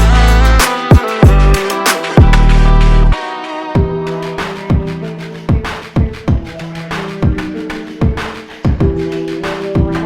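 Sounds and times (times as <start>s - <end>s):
heavy bass note: 0.0s - 0.6s, 2.2s - 3.2s
synth chords: 0.0s - 10.0s
kick drum hits: 5.5s - 6.6s, 8.0s - 9.0s.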